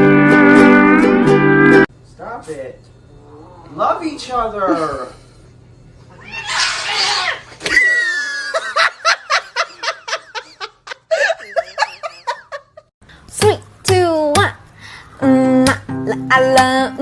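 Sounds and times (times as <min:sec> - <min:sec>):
cat hissing: 0:06.1 - 0:07.5.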